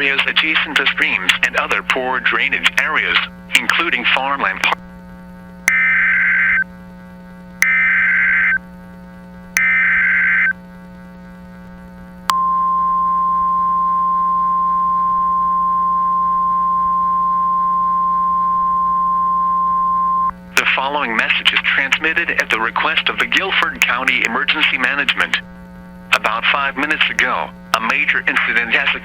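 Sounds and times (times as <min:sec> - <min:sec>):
screeching digital data bursts: 0:05.7 - 0:06.6, 0:07.6 - 0:08.6, 0:09.6 - 0:10.5
single-pitch attention tone: 0:12.3 - 0:20.3.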